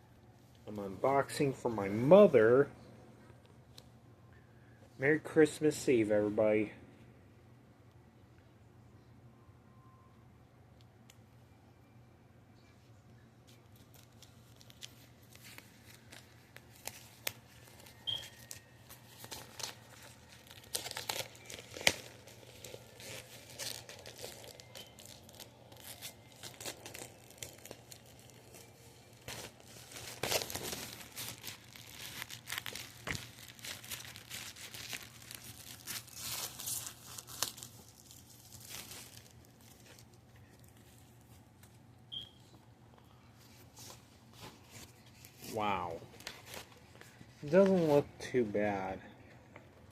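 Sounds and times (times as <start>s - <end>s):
packaging torn and crumpled: 13.5s - 41.7s.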